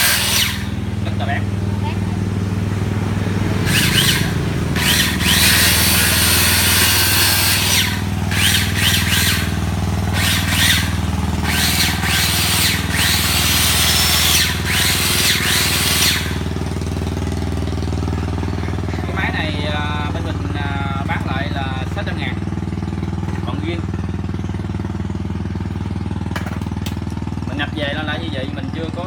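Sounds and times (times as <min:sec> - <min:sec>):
saw blade squealing: 0:00.0 - 0:00.8, 0:03.6 - 0:16.5
electric saw cutting wood: 0:00.0 - 0:16.8
saw motor humming: 0:00.0 - 0:28.0.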